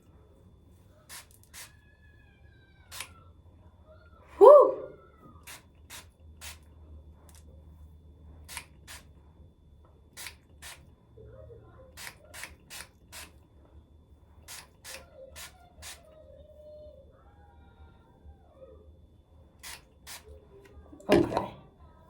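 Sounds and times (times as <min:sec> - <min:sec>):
low steady hum: 0:00.0 - 0:22.0
spray bottle spritzing: 0:01.1 - 0:01.7, 0:02.9 - 0:03.1, 0:05.4 - 0:06.6, 0:08.5 - 0:09.0, 0:10.2 - 0:10.8, 0:12.0 - 0:13.4, 0:14.5 - 0:16.0, 0:19.6 - 0:20.3.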